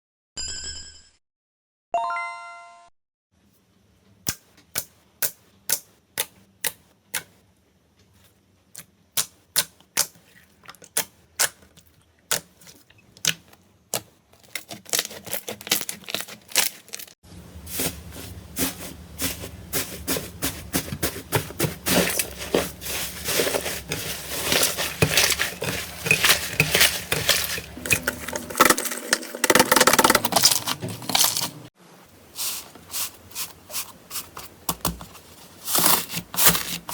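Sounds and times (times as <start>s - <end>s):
slime crackling and popping: 28.1s - 31.5s.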